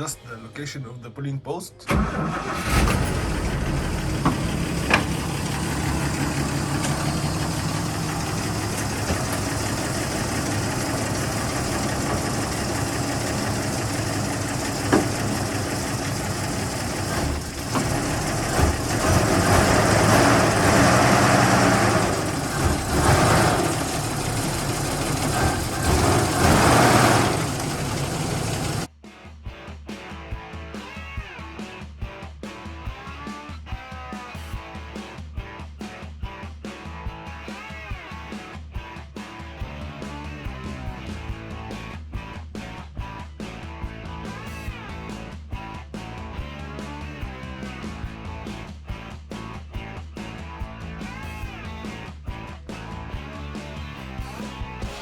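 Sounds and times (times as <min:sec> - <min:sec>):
machine motor humming: 0:02.7 - 0:28.9.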